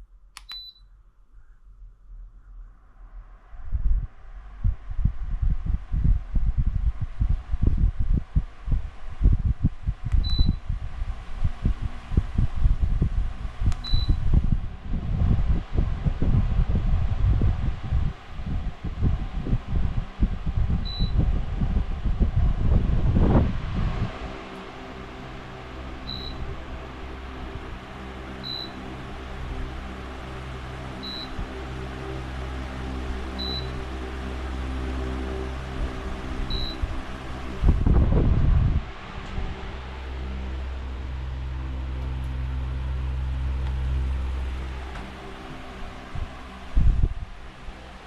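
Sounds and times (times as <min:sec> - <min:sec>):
fan button click: 0:00.4 - 0:00.8
fan air buffeting microphone: 0:01.9 - 0:48.0
short high beep: 0:26.1 - 0:26.4.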